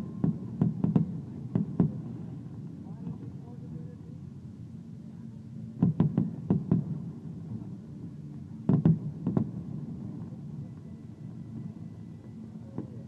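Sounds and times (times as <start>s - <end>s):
fireworks bursting: 0.0s - 2.4s, 5.8s - 7.7s, 8.7s - 11.9s
low steady rumble: 0.0s - 13.0s.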